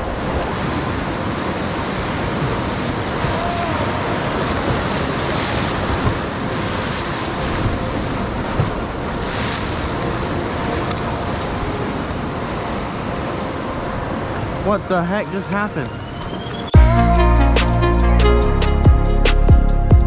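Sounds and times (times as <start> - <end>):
wind buffeting microphone: 0.0 - 15.0
ocean surf breaking: 0.0 - 16.8.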